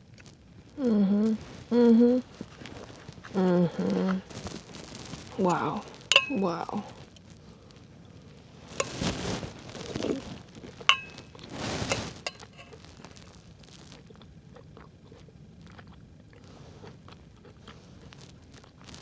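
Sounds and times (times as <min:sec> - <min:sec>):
rustling: 0:00.2 - 0:14.0
spoon clinking on metal thermos: 0:05.4 - 0:06.8, 0:10.9 - 0:12.8.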